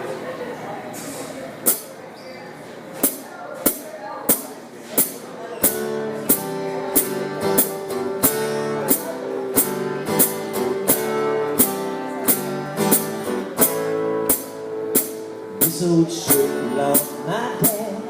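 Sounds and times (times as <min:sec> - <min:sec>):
acoustic guitar strumming: 0:01.6 - 0:02.0, 0:03.0 - 0:18.0
percussion beat: 0:11.6 - 0:17.9.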